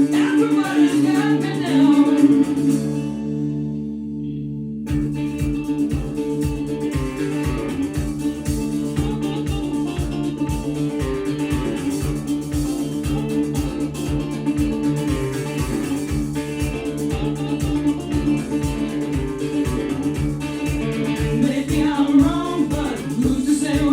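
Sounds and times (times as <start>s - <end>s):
plucked guitar: 0.0s - 23.9s
steady bass beat: 4.8s - 23.9s.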